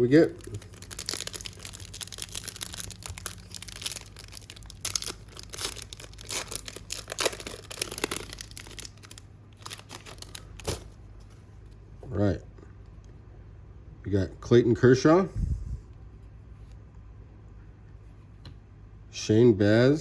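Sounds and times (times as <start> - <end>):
wrapper tearing and crinkling: 0.0 - 11.0.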